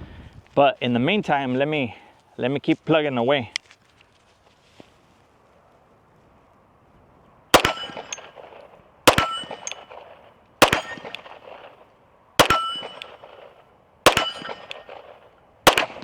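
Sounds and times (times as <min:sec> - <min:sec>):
pistol shots: 0:07.5 - 0:11.8, 0:12.4 - 0:16.0
bullet clanging on steel target: 0:07.6 - 0:11.6, 0:12.4 - 0:13.5, 0:14.1 - 0:15.1.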